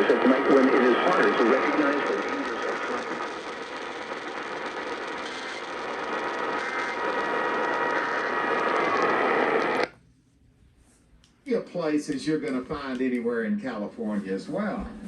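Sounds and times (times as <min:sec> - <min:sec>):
radio static hiss: 0:00.0 - 0:09.9
faint steady tones: 0:00.0 - 0:10.0.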